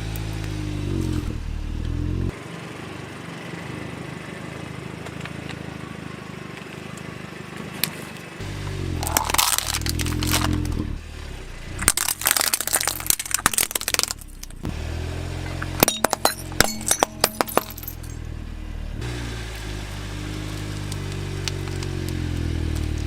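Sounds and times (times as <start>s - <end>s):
car engine running: 0.0s - 23.0s
tyre crushing crunchy objects: 8.5s - 10.9s, 11.8s - 14.7s, 20.2s - 23.0s
sharp cracks and snaps: 9.0s - 10.8s, 11.8s - 14.7s, 20.4s - 23.0s.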